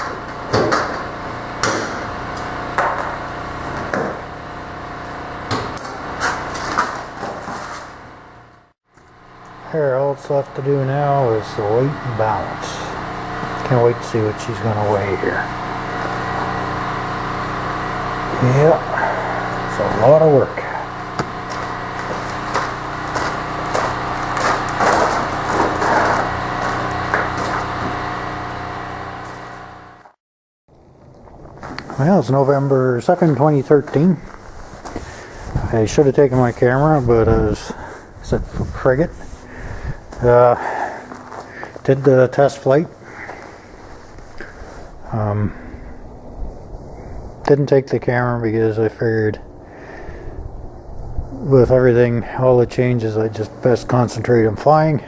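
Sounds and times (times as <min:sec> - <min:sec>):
scraping: 0:00.0 - 0:08.4, 0:10.9 - 0:29.7, 0:31.3 - 0:47.4
steady hum: 0:00.0 - 0:30.2, 0:30.8 - 0:55.0.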